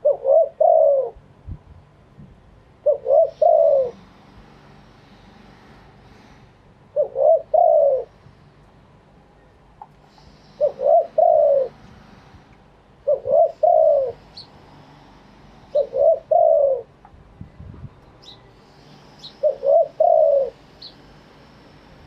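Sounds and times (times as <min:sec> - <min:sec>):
dove cooing: 0:00.0 - 0:01.2, 0:02.8 - 0:04.0, 0:06.9 - 0:08.2, 0:10.4 - 0:11.8, 0:13.0 - 0:14.4, 0:15.7 - 0:16.9, 0:19.2 - 0:20.9.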